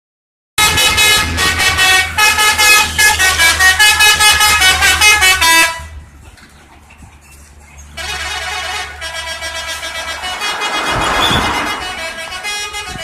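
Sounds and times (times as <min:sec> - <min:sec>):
musical air horn tune: 0:00.6 - 0:06.0, 0:08.0 - 0:13.0.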